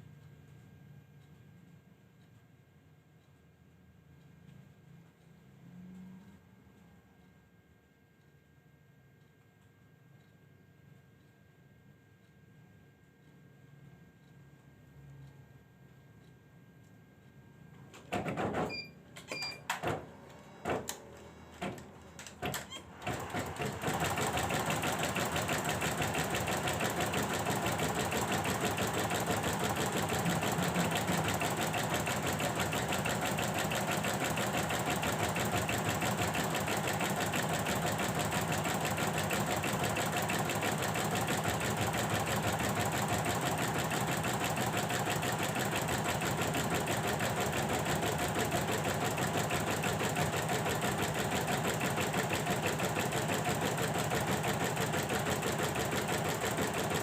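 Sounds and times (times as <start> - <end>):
embroidery machine stitching: 21.6 - 57.0.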